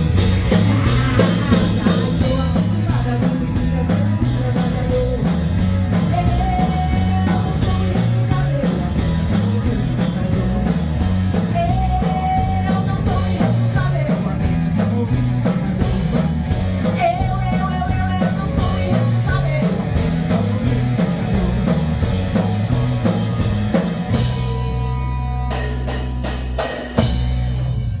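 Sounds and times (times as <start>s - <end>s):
cymbal crash: 0.0s - 2.5s
rock band playing: 0.0s - 28.0s.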